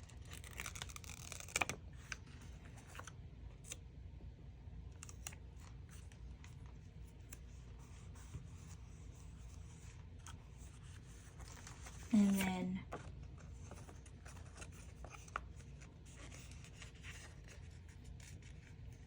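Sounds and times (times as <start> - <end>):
hands handling paper sheets: 5.0 - 19.0.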